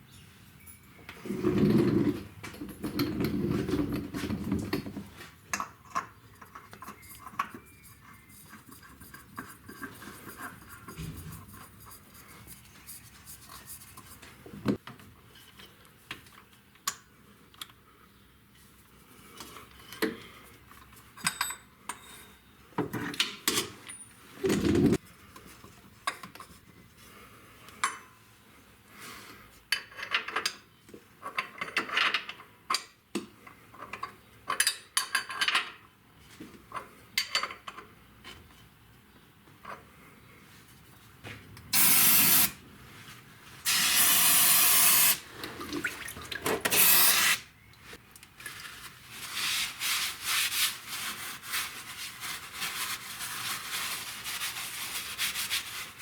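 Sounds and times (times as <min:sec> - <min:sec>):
metal tools clinking and scraping: 0:00.6 - 0:08.1, 0:21.2 - 0:22.5.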